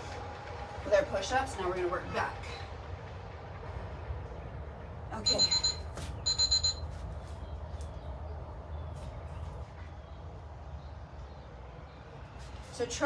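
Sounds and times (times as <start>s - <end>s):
low outdoor rumble: 0.0s - 13.0s
high electronic beep: 5.3s - 6.8s.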